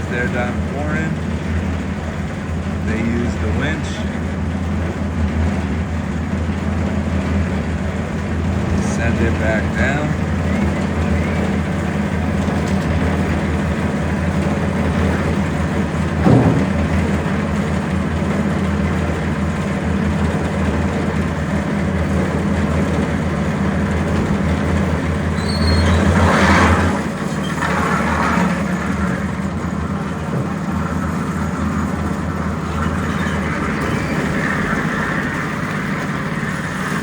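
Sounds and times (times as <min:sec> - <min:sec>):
machinery engine droning: 0:00.0 - 0:37.0
brief high squeal: 0:25.3 - 0:26.2, 0:32.8 - 0:35.2.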